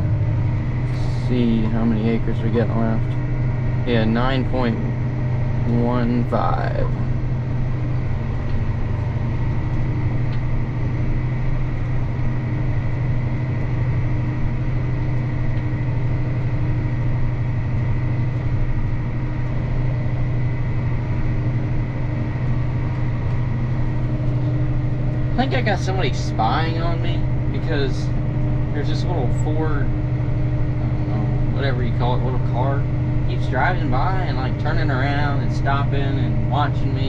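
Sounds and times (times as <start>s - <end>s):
faint high whine: 0.0s - 37.0s
tractor engine drone: 0.0s - 37.0s.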